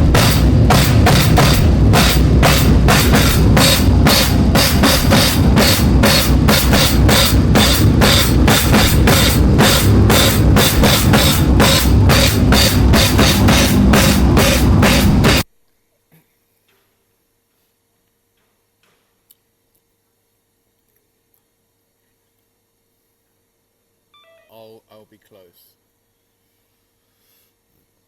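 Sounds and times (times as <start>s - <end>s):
loud drumming with cymbals: 0.0s - 15.4s.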